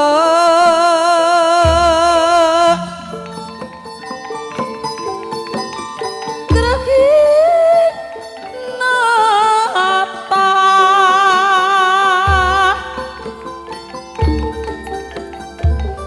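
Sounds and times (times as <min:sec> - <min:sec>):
woman singing with vibrato: 0:00.0 - 0:03.6, 0:06.5 - 0:13.8
plucked zither: 0:00.0 - 0:16.0
low thumps: 0:01.7 - 0:02.4.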